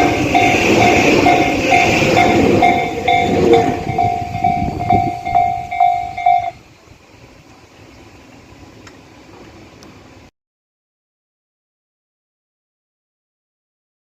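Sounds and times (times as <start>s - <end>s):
level crossing warning bell: 0.0s - 6.6s
electric train rumbling past: 0.0s - 10.3s.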